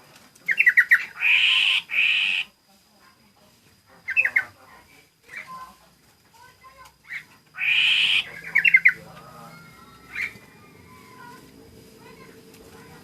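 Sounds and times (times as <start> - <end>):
songbird chirping: 0.3 - 13.0
bird harsh squawk: 0.6 - 2.5, 7.1 - 9.0, 9.7 - 10.4.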